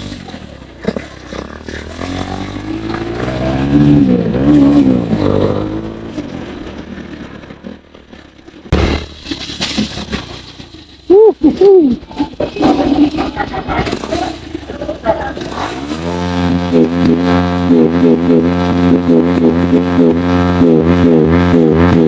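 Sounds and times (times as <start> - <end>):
motorcycle engine revving: 0.0 - 10.9, 12.0 - 22.0
loud exhaust bang: 8.7 - 10.6.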